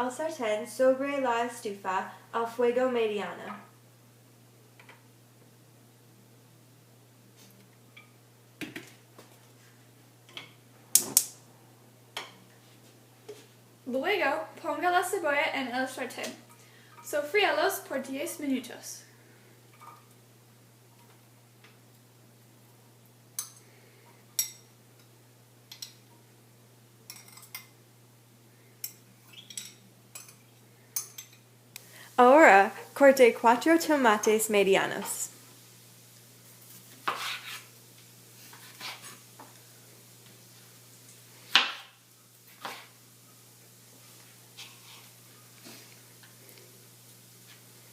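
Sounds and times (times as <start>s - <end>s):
faint steady hum: 0.0s - 47.9s
utensils clinking against cookware: 28.8s - 30.4s.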